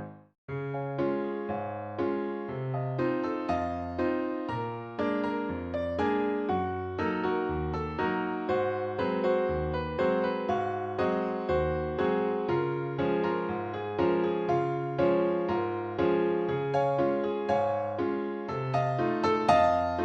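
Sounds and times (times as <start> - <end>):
electric piano playing: 0.0 - 20.0.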